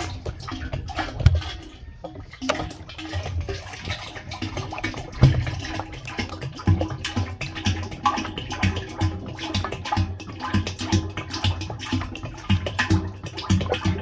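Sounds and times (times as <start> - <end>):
oil glugging from a jug: 0.0 - 14.0
knock: 5.2 - 5.5.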